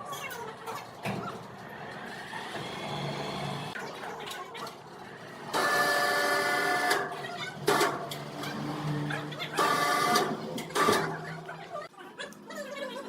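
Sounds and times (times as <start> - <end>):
sawmill machinery running: 1.6 - 3.9, 4.8 - 11.6.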